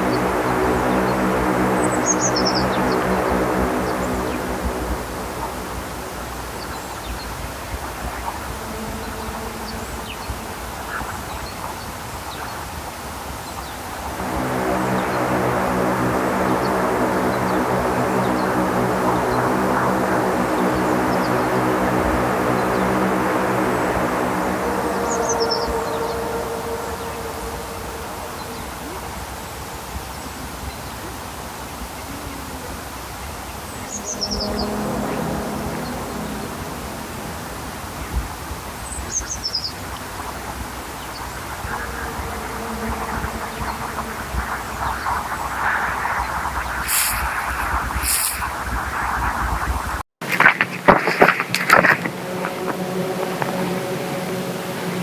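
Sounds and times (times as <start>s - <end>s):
short high chirps: 46.8s - 48.5s.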